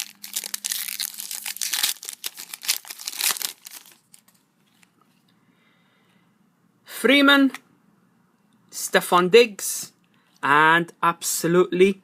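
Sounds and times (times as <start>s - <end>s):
card pack wrapper crinkling: 0.0s - 4.9s.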